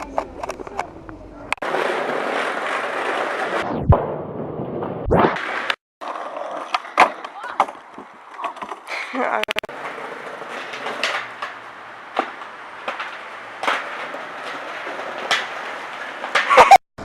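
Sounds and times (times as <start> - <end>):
skateboard wheels rolling on pavement: 0.0 - 16.8
skateboard clacks: 5.5 - 16.8.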